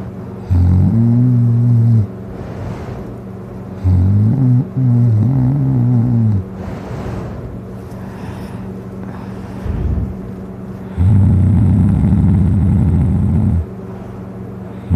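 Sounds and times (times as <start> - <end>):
person snoring loudly: 0.4 - 2.9, 3.8 - 7.4, 10.9 - 13.7
breathy rush of air: 2.2 - 3.6, 6.5 - 11.0.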